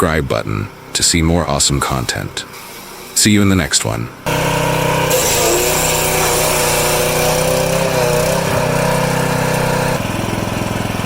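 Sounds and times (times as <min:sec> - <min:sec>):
small engine running: 0:04.2 - 0:11.0.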